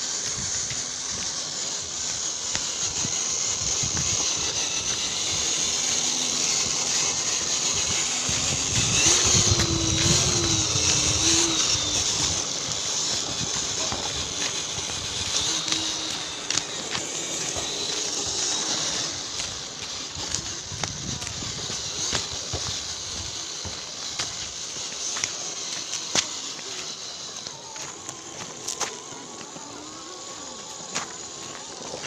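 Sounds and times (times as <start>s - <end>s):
rc car electric motor whining: 0.0s - 32.0s.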